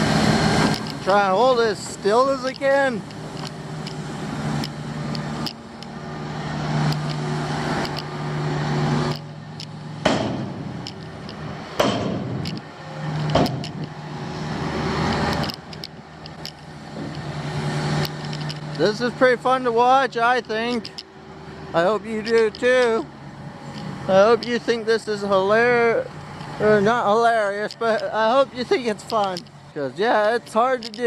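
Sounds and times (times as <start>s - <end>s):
diesel engine drone: 0.0s - 31.0s
sharp clicks: 2.4s - 4.0s, 4.6s - 6.0s, 6.8s - 8.2s, 9.1s - 14.0s, 15.1s - 17.3s, 18.0s - 19.0s, 20.1s - 21.1s, 22.2s - 23.0s, 27.4s - 29.6s, 30.5s - 31.0s.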